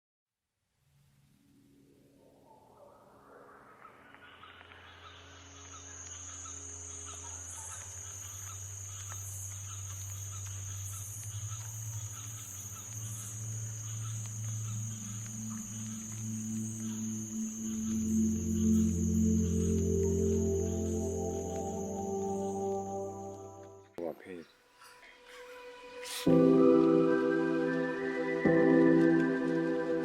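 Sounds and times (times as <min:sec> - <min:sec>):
crickets chirping: 0:03.2 - 0:24.2.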